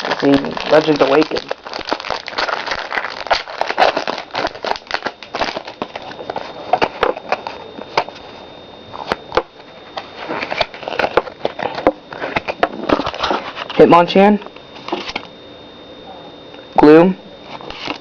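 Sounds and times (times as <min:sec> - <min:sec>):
foil wrapper crinkling: 0:00.0 - 0:08.2, 0:09.0 - 0:13.9.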